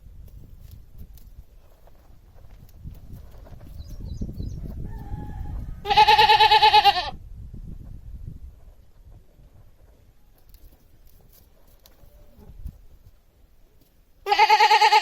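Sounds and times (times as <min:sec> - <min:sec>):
goat bleating: 0:05.8 - 0:07.2, 0:14.2 - 0:15.0.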